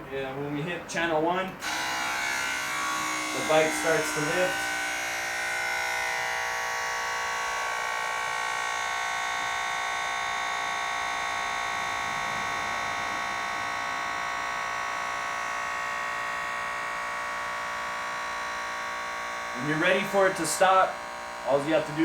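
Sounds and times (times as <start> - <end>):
air compressor buzzing: 1.5 - 22.0.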